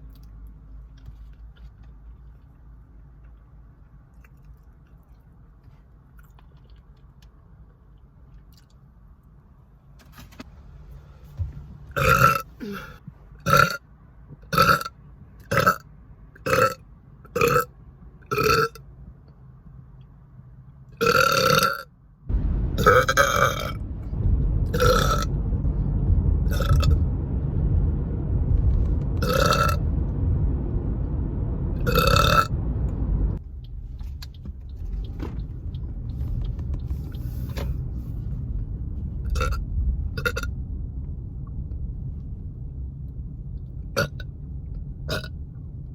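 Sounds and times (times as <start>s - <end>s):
low rumbling noise: 10.5s - 16.8s, 22.2s - 45.9s
woman burping: 12.6s - 13.0s.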